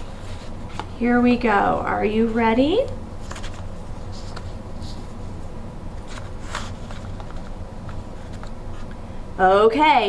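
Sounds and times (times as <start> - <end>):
paper cards rustling: 0.0 - 1.0, 2.2 - 9.0
steady low hum: 0.0 - 10.0.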